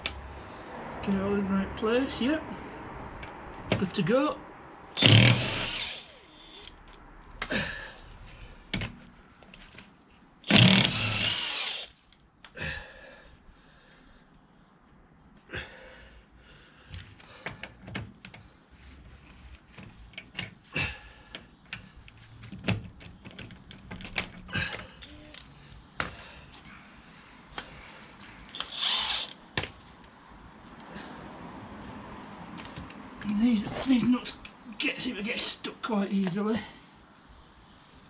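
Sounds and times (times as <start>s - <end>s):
power tool burst: 5.0s - 6.2s, 10.5s - 11.9s.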